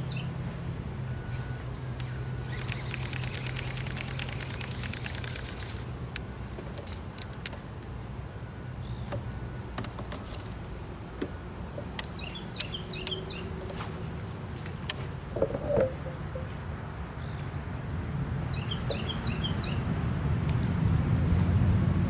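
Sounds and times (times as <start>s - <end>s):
bird chirping: 0.0s - 0.3s, 12.0s - 14.0s, 15.5s - 16.6s, 18.4s - 19.8s
sharp clicks: 2.0s - 7.9s, 11.2s - 13.8s.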